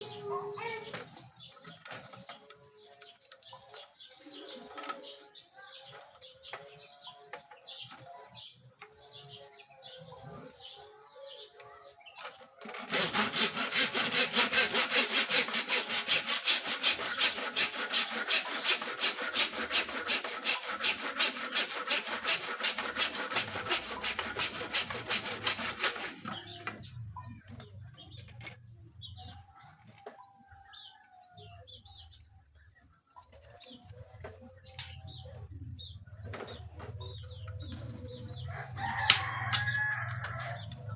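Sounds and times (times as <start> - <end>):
small birds chirping: 0.0 - 12.6, 26.1 - 40.9
hand saw cutting wood: 12.3 - 26.8.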